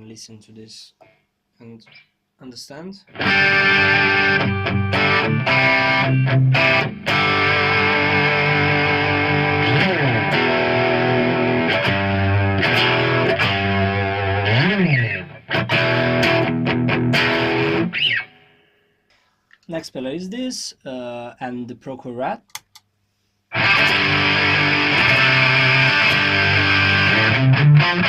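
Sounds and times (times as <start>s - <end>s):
distorted electric guitar lead: 3.1s - 18.6s, 23.5s - 28.0s.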